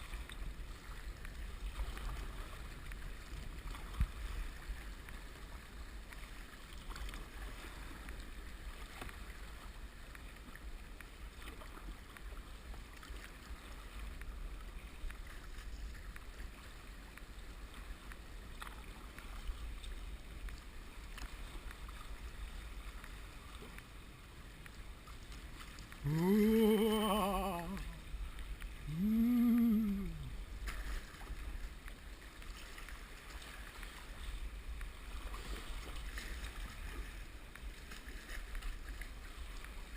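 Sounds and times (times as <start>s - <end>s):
drawn-out voice calls: 26.0s - 28.0s, 28.8s - 30.4s
water washing: 26.0s - 28.1s.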